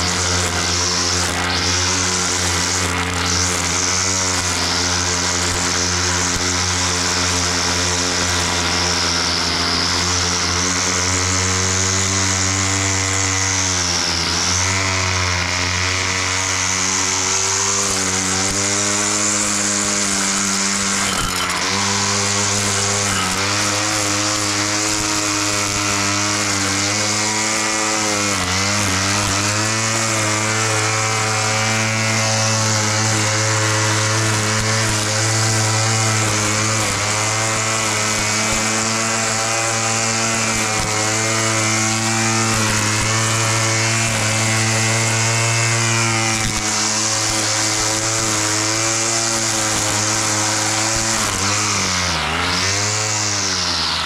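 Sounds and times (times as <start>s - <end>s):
grass cutter engine running: 0.0s - 54.0s.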